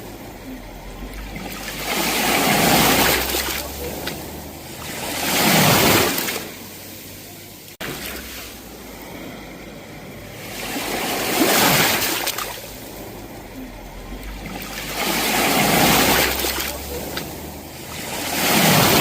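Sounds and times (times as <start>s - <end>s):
sea waves breaking: 0.0s - 19.0s.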